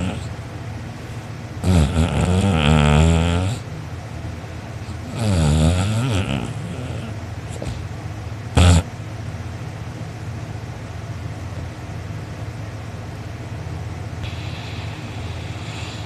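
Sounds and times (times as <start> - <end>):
snort: 0.0 - 0.4, 1.6 - 3.7, 4.8 - 7.9, 8.6 - 8.9, 14.2 - 16.0
low background hum: 0.0 - 16.0
person snoring: 1.6 - 3.6, 5.0 - 7.8, 14.2 - 16.0.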